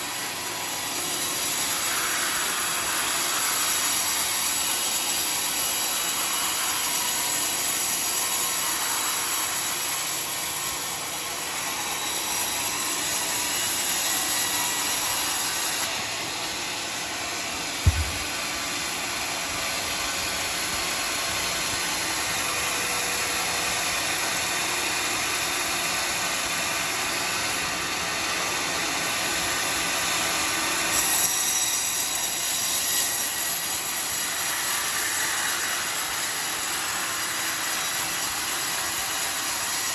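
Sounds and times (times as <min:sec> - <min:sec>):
bandsaw mill cutting log: 0:00.0 - 0:39.9
low thump: 0:17.9 - 0:18.4.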